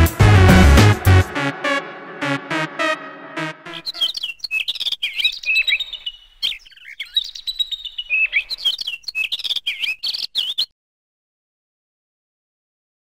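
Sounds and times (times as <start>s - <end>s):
birds chirping: 3.7s - 10.7s.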